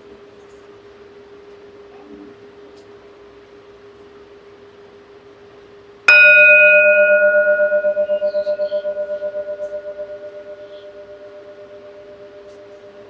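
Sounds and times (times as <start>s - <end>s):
singing bowl ringing: 6.1s - 13.0s
steady low tone: 6.1s - 13.0s.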